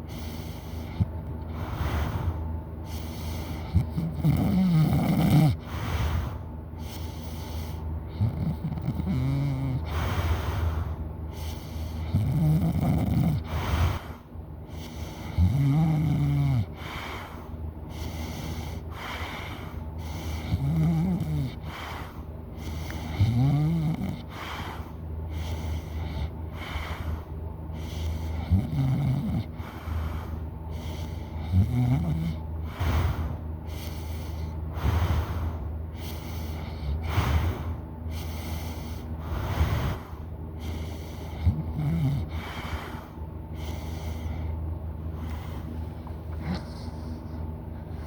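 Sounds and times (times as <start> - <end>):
person snoring loudly: 3.6 - 6.3, 8.2 - 10.8, 12.0 - 14.0, 15.3 - 16.9, 20.4 - 21.9, 23.0 - 24.5, 28.3 - 29.8, 31.4 - 33.4, 41.4 - 42.5.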